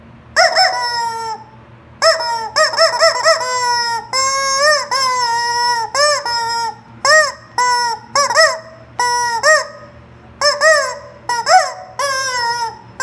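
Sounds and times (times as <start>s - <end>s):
rubber chicken toy squawking: 0.4s - 13.0s.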